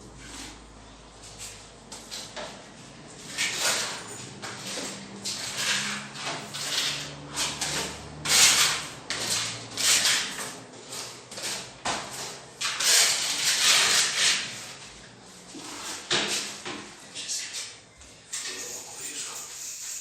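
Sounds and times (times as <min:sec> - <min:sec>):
spatula scraping filler on wall: 0:03.2 - 0:17.8.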